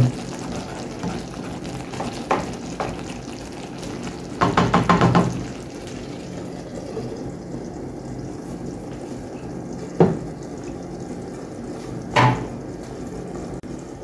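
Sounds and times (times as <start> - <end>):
curry simmering and sizzling in a pot: 0.0 - 14.0
spoon knocking on a pot: 1.9 - 3.1, 4.4 - 5.5, 10.0 - 10.3, 12.2 - 12.5.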